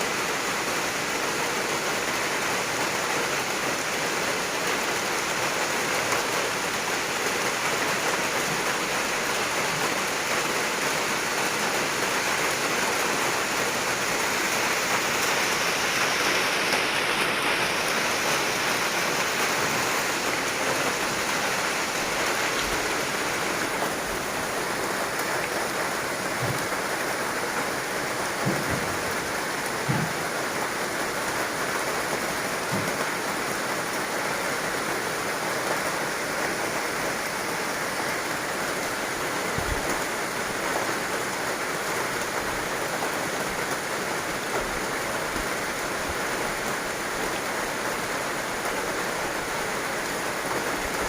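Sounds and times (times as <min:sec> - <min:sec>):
heavy rain falling: 0:00.0 - 0:51.0.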